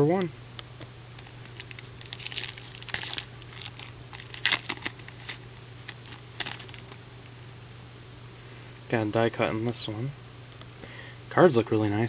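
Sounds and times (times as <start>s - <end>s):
wrapper crinkling and tearing: 1.2s - 7.0s.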